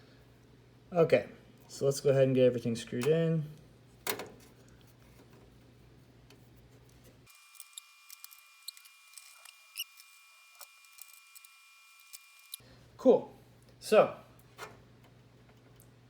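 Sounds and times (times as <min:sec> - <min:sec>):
screwdriver clicks and ticks: 0:07.3 - 0:12.6.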